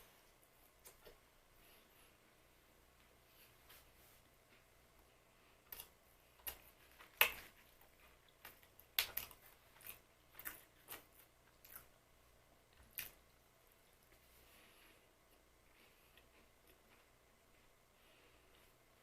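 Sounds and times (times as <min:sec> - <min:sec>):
crunching pastry biscuits: 0:05.6 - 0:12.1.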